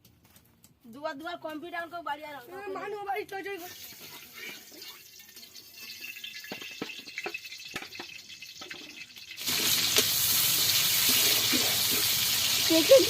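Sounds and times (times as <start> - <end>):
running water rushing: 10.7 - 13.0.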